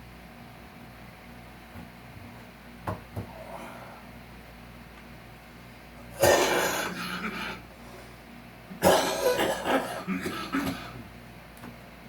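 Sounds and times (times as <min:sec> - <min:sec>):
man coughing: 0:06.2 - 0:07.6, 0:08.8 - 0:11.0.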